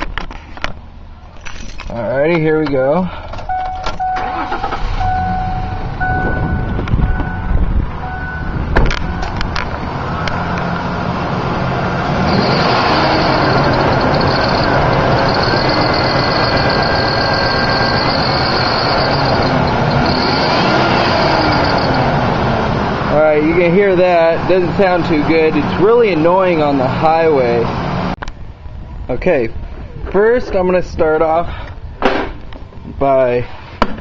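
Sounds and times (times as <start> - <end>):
engine running: 3.8 - 28.2
intermittent beeping: 12.0 - 22.5
high-pitched metallic squeal: 12.1 - 22.4.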